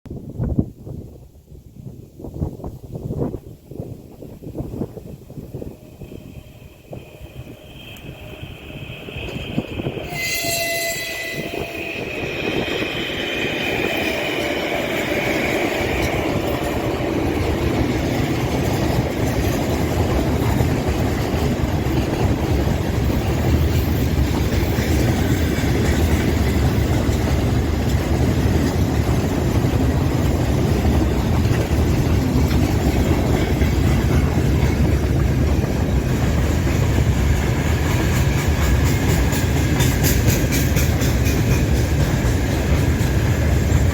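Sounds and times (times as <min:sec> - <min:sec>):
freight train wheels rumbling: 0:02.0 - 0:43.9
high whining tones: 0:05.6 - 0:15.4.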